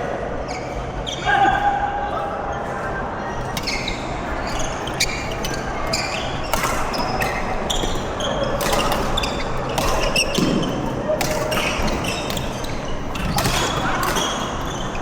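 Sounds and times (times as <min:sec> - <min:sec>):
shoes squeaking on court: 0:02.9 - 0:10.8.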